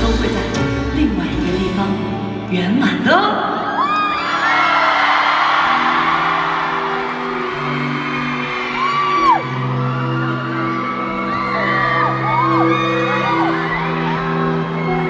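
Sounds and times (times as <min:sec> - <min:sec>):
fans screaming: 0:03.8 - 0:15.0.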